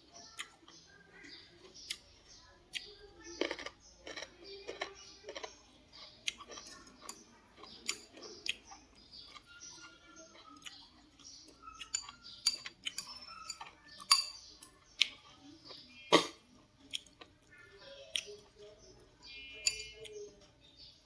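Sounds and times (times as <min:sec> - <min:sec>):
chewing: 0:00.0 - 0:21.0
utensils knocking against a bowl: 0:11.8 - 0:14.4, 0:19.6 - 0:20.0.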